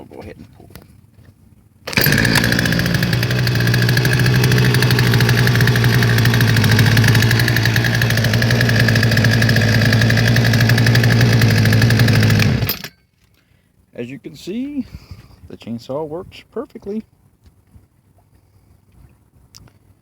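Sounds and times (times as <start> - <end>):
chainsaw idling: 1.9 - 12.9.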